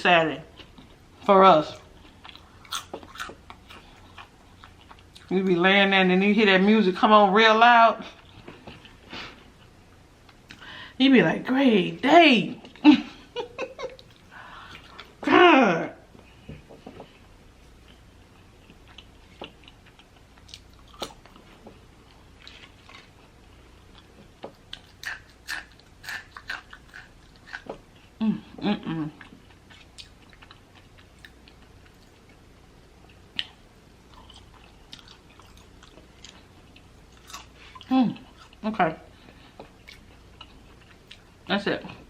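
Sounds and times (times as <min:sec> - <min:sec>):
crunchy chewing: 0:01.8 - 0:05.3, 0:17.7 - 0:28.1, 0:29.2 - 0:38.6
short hummed vocal sound: 0:28.2 - 0:29.2.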